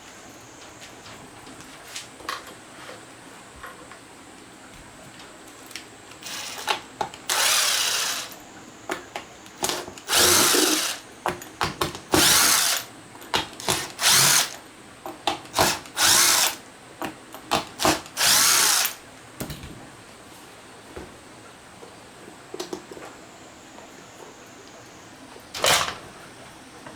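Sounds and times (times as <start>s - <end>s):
small electric motor spinning: 6.2s - 6.7s, 7.3s - 8.4s, 10.0s - 11.0s, 12.2s - 12.9s, 13.7s - 14.6s, 15.9s - 16.6s, 18.2s - 19.0s.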